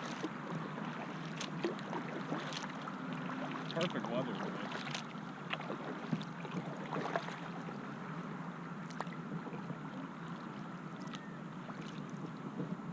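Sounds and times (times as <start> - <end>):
water drips and splashes: 0.0 - 7.7, 10.3 - 12.2
water lapping around kayak: 0.0 - 12.9.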